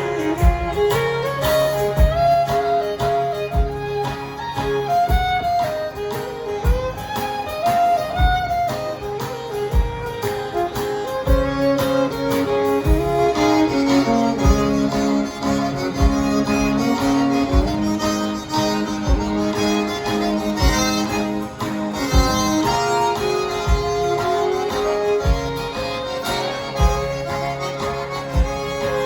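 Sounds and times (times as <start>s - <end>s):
fiddle melody: 0.0s - 29.0s
guitar: 0.0s - 29.0s
low drum beat: 0.0s - 29.0s.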